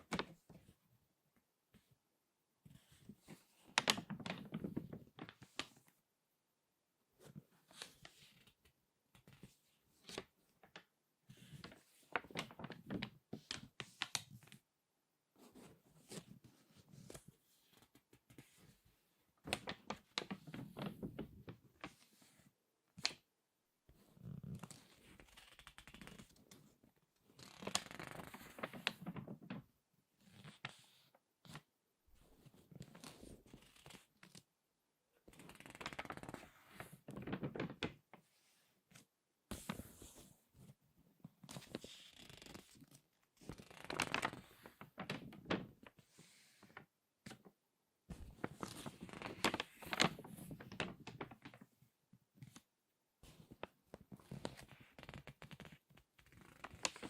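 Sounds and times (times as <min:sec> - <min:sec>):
magazine pages crackling: 0:33.0 - 0:34.4, 0:35.3 - 0:36.4, 0:41.5 - 0:45.9, 0:48.1 - 0:51.7, 0:54.3 - 0:57.0.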